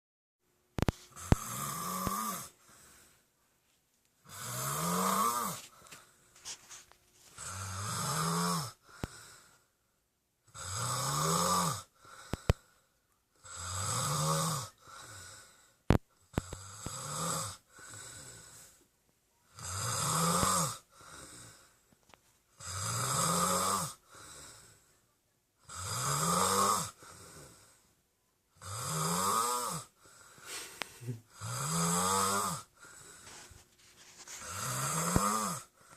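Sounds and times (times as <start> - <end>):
boy snoring: 0.8 - 3.0, 4.2 - 5.8, 7.3 - 9.4, 10.5 - 12.6, 13.4 - 15.6, 16.2 - 18.8, 19.5 - 21.7, 22.6 - 24.8, 25.6 - 27.8, 28.5 - 33.5, 34.1 - 35.9
quiet breathing: 0.8 - 10.2, 11.8 - 13.6, 14.6 - 19.7, 20.4 - 22.6, 23.8 - 25.4, 26.8 - 28.4, 29.5 - 35.9.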